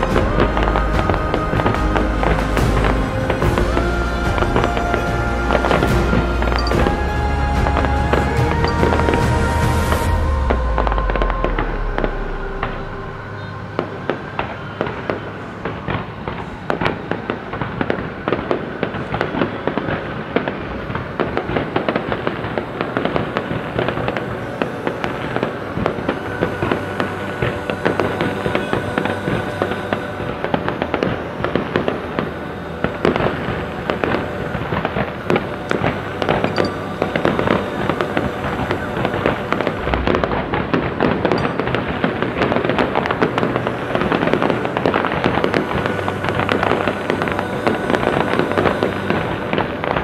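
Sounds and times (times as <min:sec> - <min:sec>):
low boom: 0:00.0 - 0:17.8
fireworks popping and crackling: 0:14.4 - 0:50.0.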